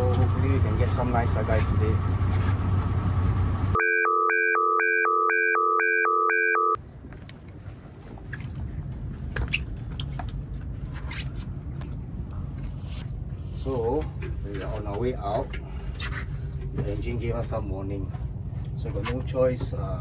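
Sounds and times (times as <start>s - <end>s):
engine rumble: 0.0s - 3.8s, 6.8s - 20.0s
electronic alarm two-tone beeping: 3.8s - 6.8s.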